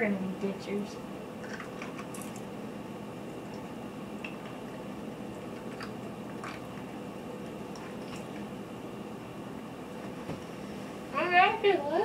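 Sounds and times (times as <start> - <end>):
steady low hum: 0.0 - 12.0
gum chewing and crunching: 1.4 - 2.4.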